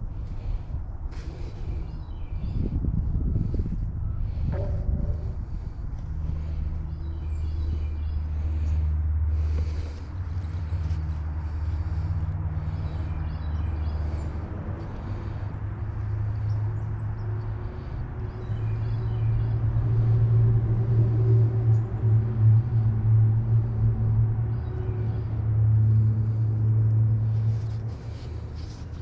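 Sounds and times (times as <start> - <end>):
birds chirping: 0.1 - 20.2, 23.6 - 29.0.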